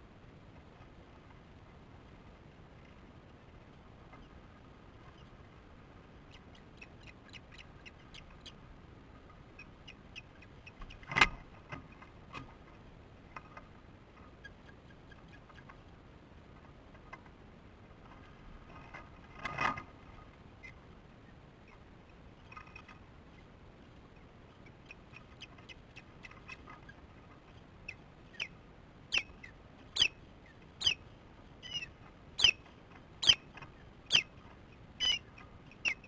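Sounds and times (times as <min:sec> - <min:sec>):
osprey alarm calls: 0:27.9 - 0:28.5, 0:29.1 - 0:30.2, 0:30.8 - 0:31.0, 0:31.6 - 0:32.6, 0:33.2 - 0:34.4, 0:35.0 - 0:36.0.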